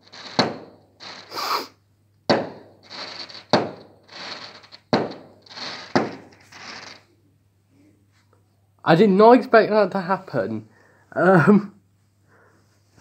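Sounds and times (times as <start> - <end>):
firework bangs: 0.0 - 7.1
fireworks crackling and hissing: 0.0 - 7.1.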